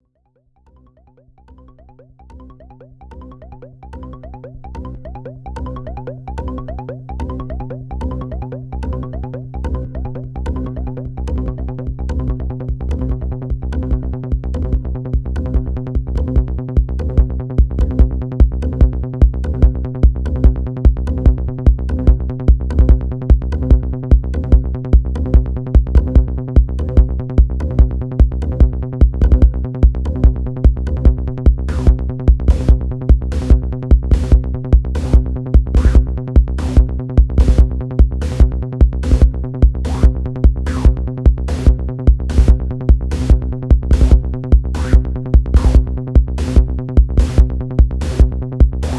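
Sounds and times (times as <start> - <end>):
low synth bass line: 0.8 - 48.9
kick drum: 12.2 - 48.9
crisp high drum machine hit: 35.8 - 36.8, 44.8 - 45.8.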